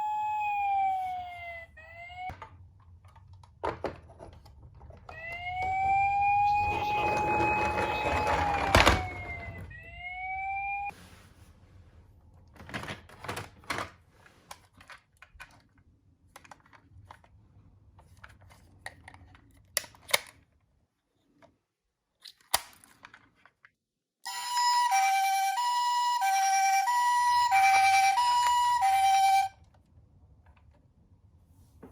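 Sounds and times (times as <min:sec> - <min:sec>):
toy siren wailing: 0:00.0 - 0:02.3, 0:05.1 - 0:10.9, 0:24.3 - 0:29.6
two-tone toy ambulance siren: 0:00.0 - 0:02.3, 0:05.1 - 0:10.9, 0:24.3 - 0:29.6
plastic toy cars clacking: 0:02.3 - 0:09.7, 0:12.5 - 0:21.6, 0:22.2 - 0:23.8.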